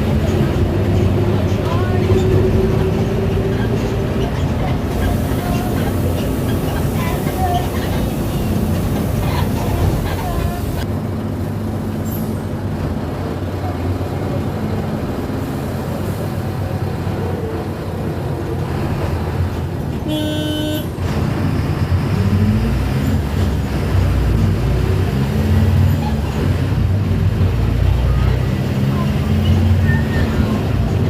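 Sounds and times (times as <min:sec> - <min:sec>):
bus drivetrain drone: 0:00.0 - 0:31.0
bus horn toot: 0:20.0 - 0:21.0.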